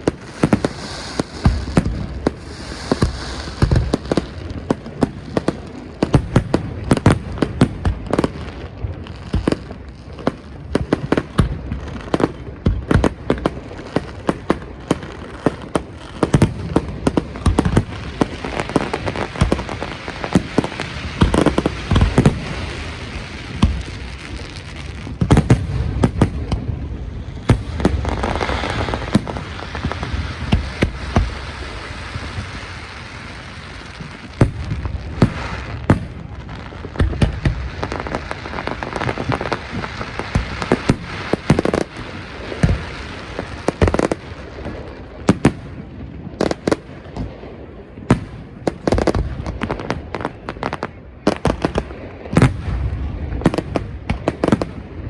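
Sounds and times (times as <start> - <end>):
hiss of crackle: 0.0 - 10.5
fireworks bangs and crackling bursts: 0.0 - 55.0.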